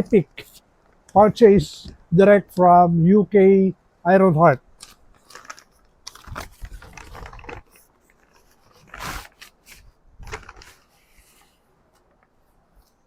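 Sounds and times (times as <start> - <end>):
paper bag rustling and crinkling: 4.8 - 12.2.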